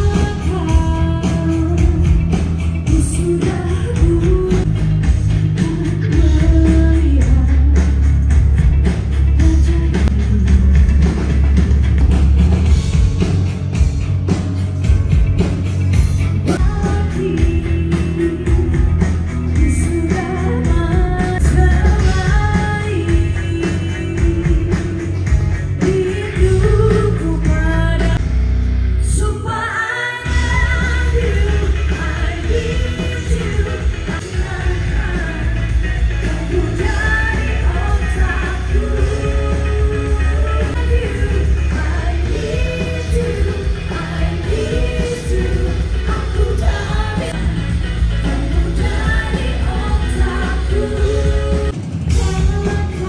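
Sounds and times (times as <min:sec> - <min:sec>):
heavy bass: 0:00.0 - 0:53.0
rock band playing live: 0:00.0 - 0:53.0
lead vocal singing: 0:29.2 - 0:53.0.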